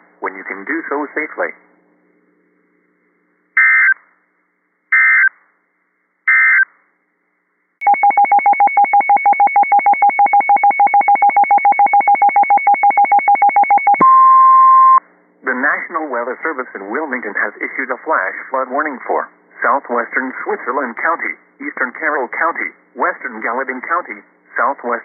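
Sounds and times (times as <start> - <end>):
fast electronic alarm beeping: 7.8 - 15.0.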